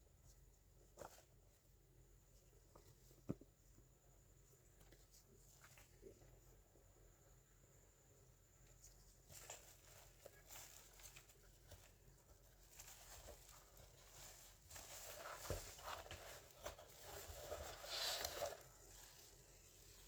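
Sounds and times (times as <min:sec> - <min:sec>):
packaging rustling: 0:09.5 - 0:19.3.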